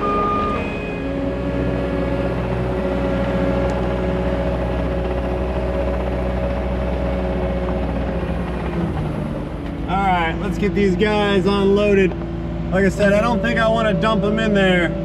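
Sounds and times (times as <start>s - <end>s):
diesel engine running: 0.0s - 15.0s
steady whine: 0.0s - 15.0s.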